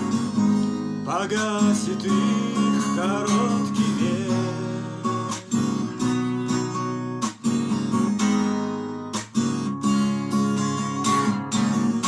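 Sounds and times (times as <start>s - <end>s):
acoustic guitar strumming chords: 0.0s - 12.0s.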